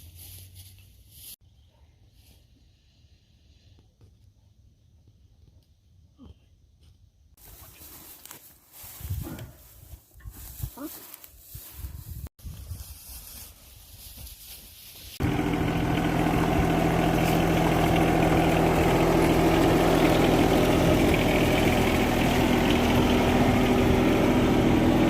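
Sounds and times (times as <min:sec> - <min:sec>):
vehicle engine idling: 0:15.2 - 0:25.0.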